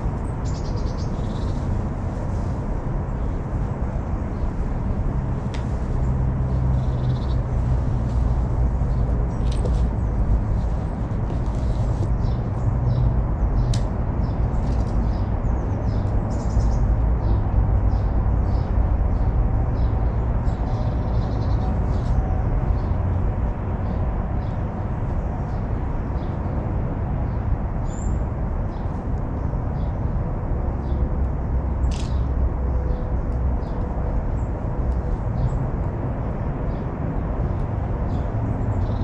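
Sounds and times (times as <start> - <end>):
small birds chirping: 0.0 - 23.0, 30.8 - 32.3, 37.5 - 39.0
road traffic rumble: 0.0 - 39.0.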